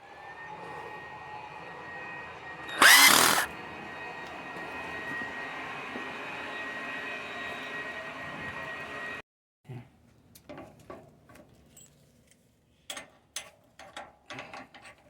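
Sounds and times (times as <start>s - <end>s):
cutting tool screeching on metal: 2.7s - 3.5s
lathe motor whine: 2.8s - 3.5s.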